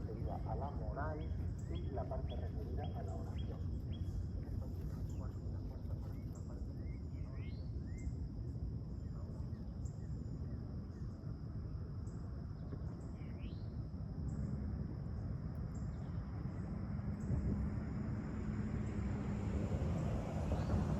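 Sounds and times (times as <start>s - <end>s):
bird chirps: 0.0s - 8.2s
high insect drone: 0.0s - 20.9s.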